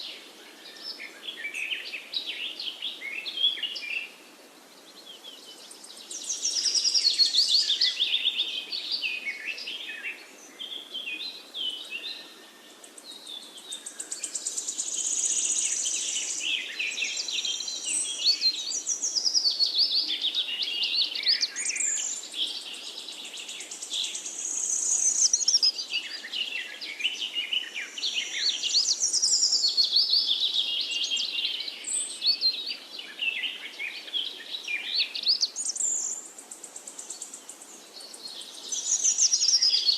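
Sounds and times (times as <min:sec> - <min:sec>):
songbirds singing and chirping: 0:00.0 - 0:39.9.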